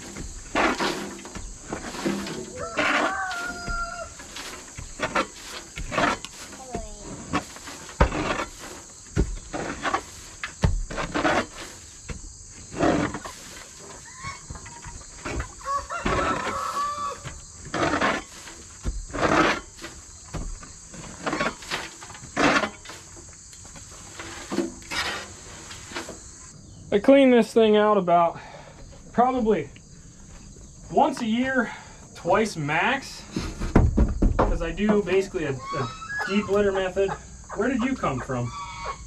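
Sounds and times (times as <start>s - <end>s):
chickens clucking: 1.6s - 5.2s, 13.3s - 17.3s, 34.8s - 39.0s
rooster crowing: 2.4s - 4.4s, 15.6s - 17.3s.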